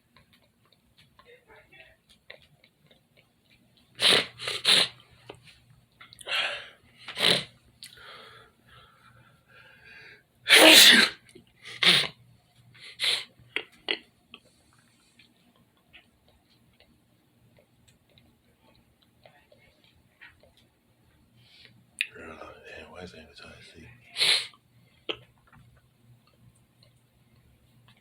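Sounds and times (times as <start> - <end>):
person sneezing: 4.0 - 4.9, 10.5 - 12.1, 24.2 - 24.5
breaths: 6.2 - 6.8, 7.9 - 10.3.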